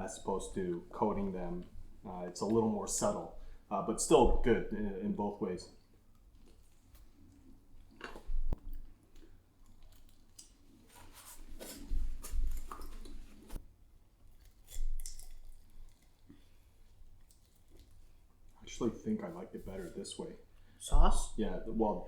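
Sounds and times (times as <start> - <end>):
chewing crispy chicken wings: 14.2 - 18.6.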